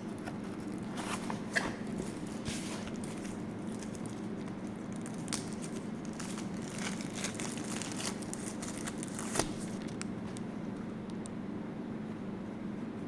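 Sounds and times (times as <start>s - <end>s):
steady low hum: 0.0s - 13.0s
packaging crinkling and rustling: 0.1s - 10.4s.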